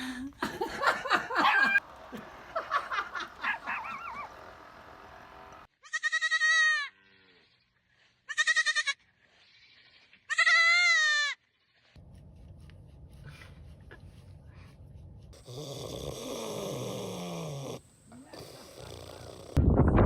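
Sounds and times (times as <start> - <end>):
farm animal bleating: 5.7 - 7.6, 8.2 - 11.8.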